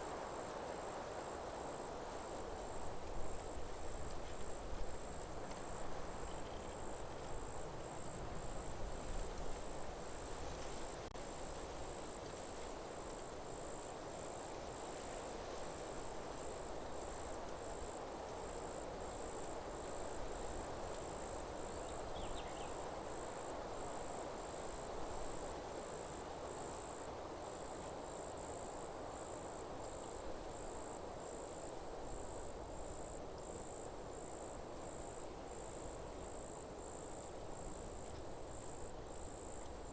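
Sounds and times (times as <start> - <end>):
low background hiss: 0.0 - 39.9
insect chirping: 6.1 - 7.1, 21.2 - 24.2, 32.1 - 39.9.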